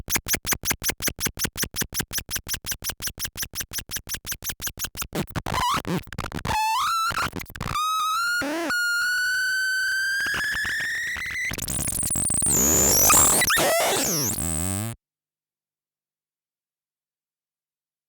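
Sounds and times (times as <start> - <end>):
buzzy synth tone climbing: 11.5 - 15.0.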